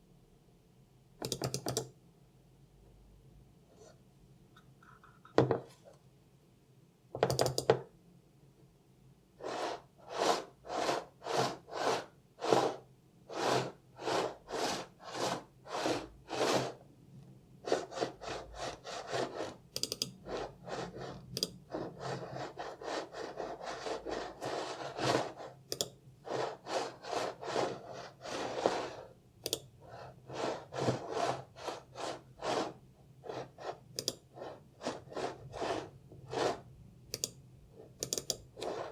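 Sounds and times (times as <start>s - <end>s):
mouse rubbing on desk: 9.4s - 16.8s, 17.6s - 29.1s, 29.8s - 36.7s, 38.6s - 38.9s.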